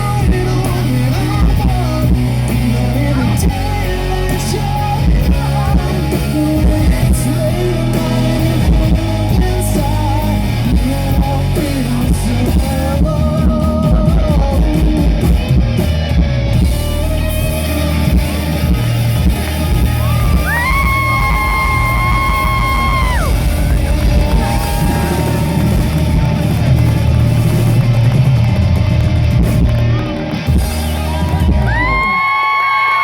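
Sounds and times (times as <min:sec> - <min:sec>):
drums: 0:00.0 - 0:33.0
electric guitars: 0:00.0 - 0:33.0.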